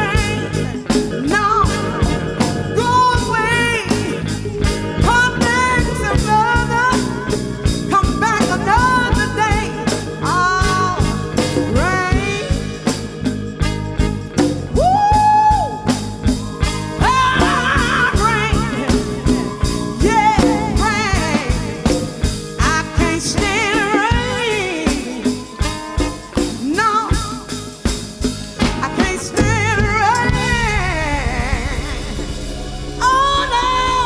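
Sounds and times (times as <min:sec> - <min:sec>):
live soul band playing: 0:00.0 - 0:34.0
steady drum beat: 0:00.0 - 0:34.0.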